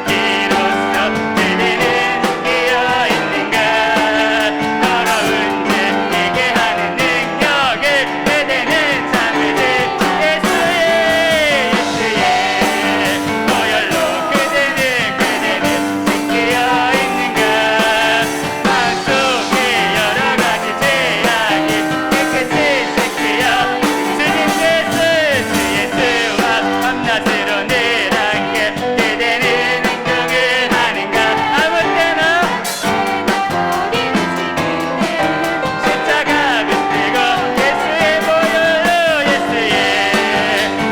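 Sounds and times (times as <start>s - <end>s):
drum kit beat: 0.0s - 40.9s
piano: 0.0s - 40.9s
vocalists singing: 0.0s - 40.9s.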